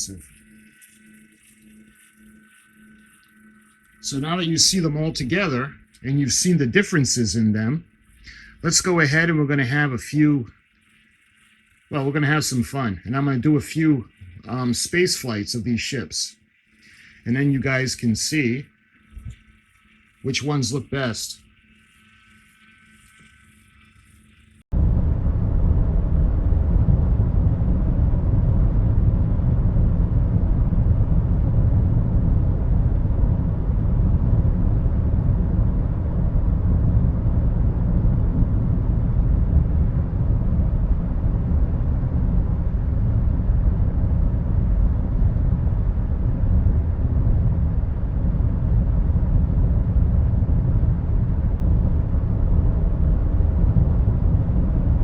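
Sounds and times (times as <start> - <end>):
low rumbling engine drone: 0.0 - 11.1, 11.8 - 22.2, 24.6 - 55.0.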